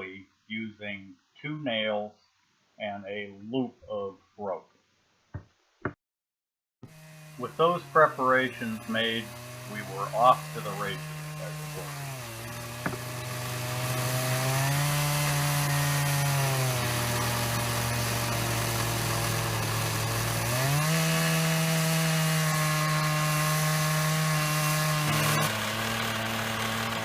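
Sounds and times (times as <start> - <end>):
chainsaw cutting log: 6.8 - 27.0.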